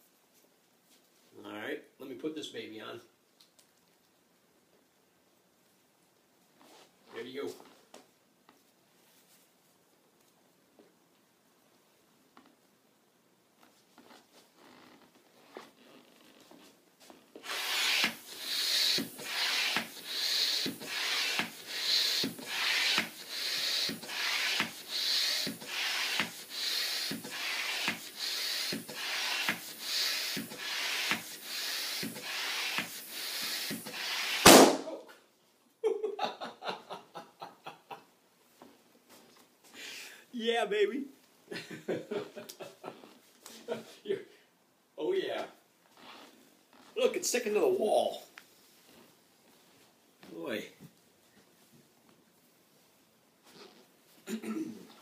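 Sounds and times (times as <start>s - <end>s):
balloon pump hissing strokes: 17.4s - 35.0s
balloon bursting pop: 25.4s - 35.0s.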